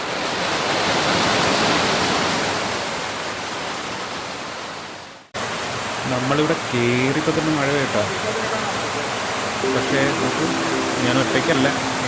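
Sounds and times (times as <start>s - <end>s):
heavy rain pouring: 5.4s - 12.0s.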